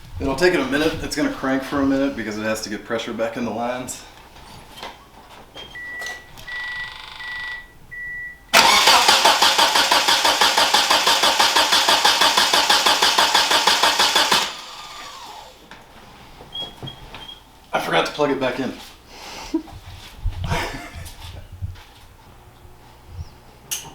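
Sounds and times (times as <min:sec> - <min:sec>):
starter cranking engine: 0:08.6 - 0:15.7.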